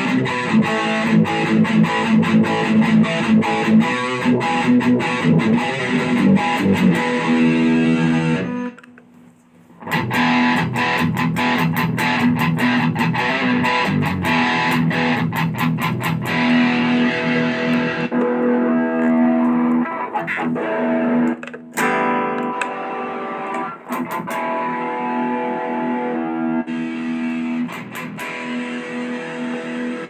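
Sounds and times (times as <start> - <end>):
distorted electric guitar: 0.0 - 9.0, 9.8 - 30.0.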